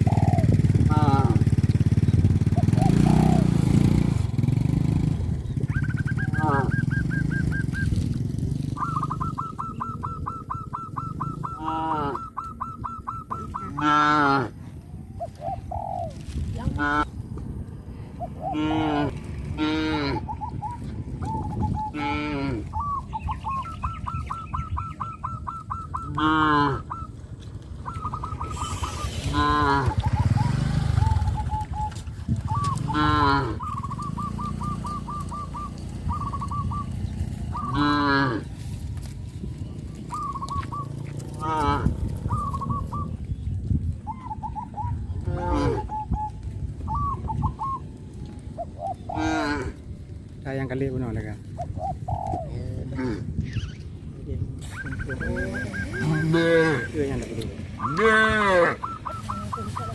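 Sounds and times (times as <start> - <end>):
drawn-out honking calls: 0.0 - 3.5, 5.4 - 8.2, 8.8 - 14.7, 18.3 - 43.2, 44.0 - 47.8, 54.6 - 59.9
cattle mooing: 13.6 - 14.6, 18.5 - 20.3, 26.1 - 26.9, 29.3 - 30.1, 32.8 - 33.6, 37.6 - 38.5, 55.5 - 57.2, 57.9 - 58.8
short chirping animal calls: 27.8 - 38.6, 53.4 - 59.9.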